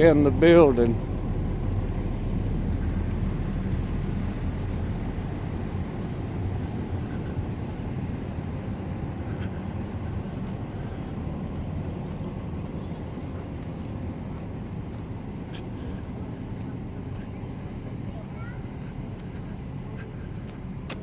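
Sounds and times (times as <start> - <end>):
diesel engine idling: 0.0 - 21.0.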